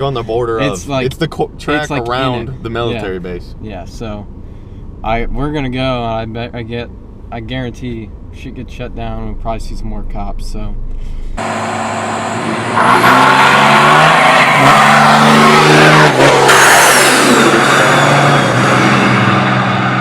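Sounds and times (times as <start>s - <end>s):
car engine accelerating hard: 11.4s - 20.0s.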